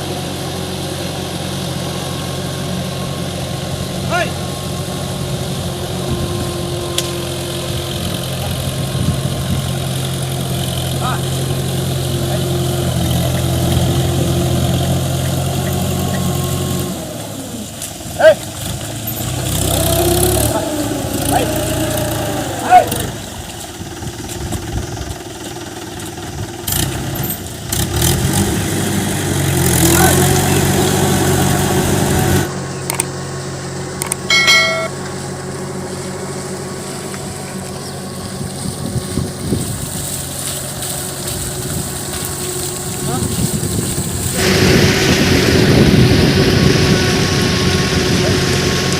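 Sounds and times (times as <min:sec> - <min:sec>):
motor engine running: 0:00.0 - 0:48.9
short high-pitched call: 0:34.3 - 0:35.0.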